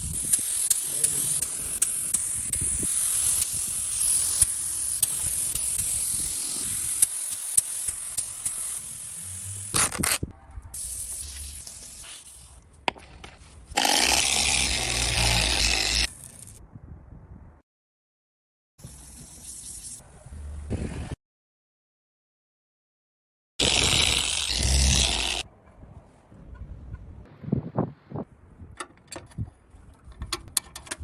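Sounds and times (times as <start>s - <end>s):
spraying hiss with clicks: 0.0s - 9.8s, 10.8s - 16.6s.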